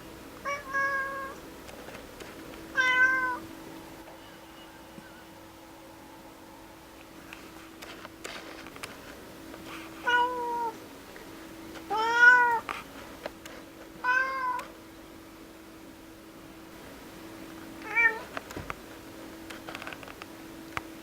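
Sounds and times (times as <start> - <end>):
cat meowing: 0.4 - 1.4, 2.7 - 3.4, 10.0 - 10.8, 11.9 - 12.7, 14.0 - 14.7, 17.8 - 18.3.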